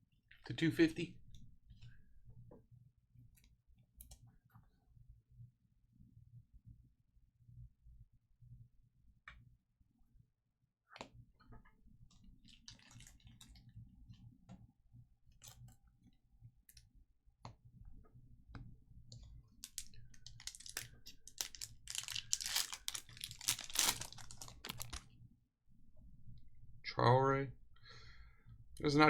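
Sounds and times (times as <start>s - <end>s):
low steady hum: 11.2s - 29.0s
foil wrappers crinkling: 12.5s - 13.6s, 19.6s - 25.1s
cards clicking and rustling: 19.6s - 25.0s.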